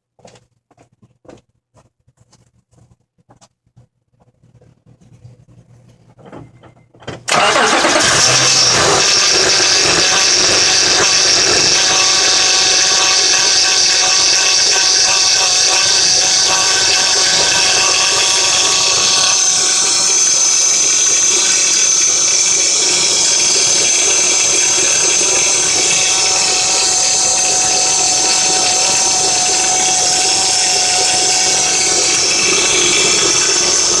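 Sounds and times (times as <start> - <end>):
car engine running: 7.3 - 34.0
high-pitched belt whine: 7.3 - 34.0.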